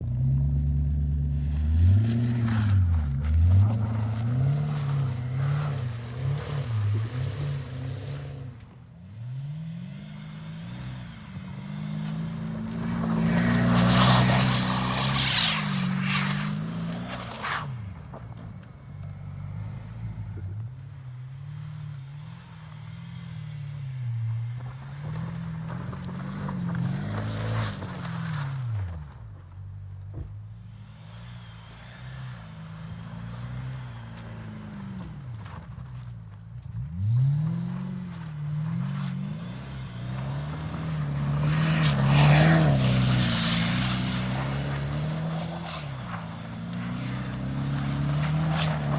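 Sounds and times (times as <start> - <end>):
car engine revving: 0.0 - 29.0, 31.1 - 48.9.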